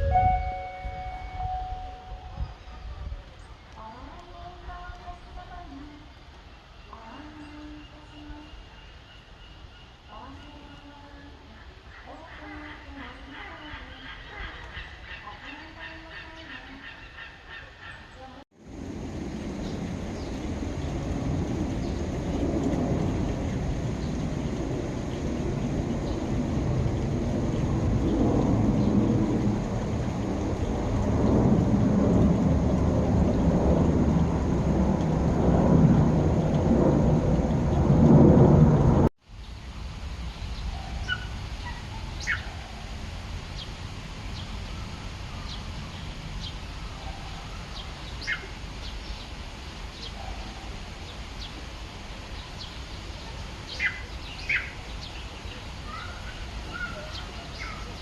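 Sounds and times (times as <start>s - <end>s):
loud low rumbling: 0.0s - 3.1s, 18.6s - 39.1s.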